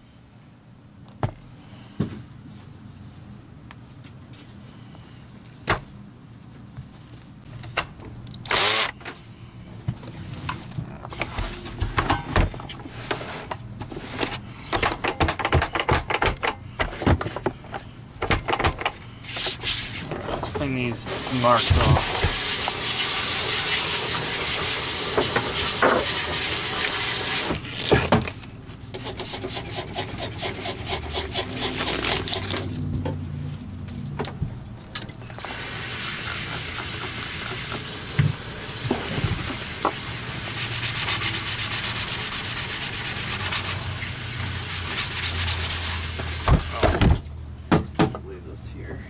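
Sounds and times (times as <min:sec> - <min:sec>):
rapid scrubbing strokes: 0:29.0 - 0:32.5, 0:40.4 - 0:44.0, 0:44.6 - 0:46.2.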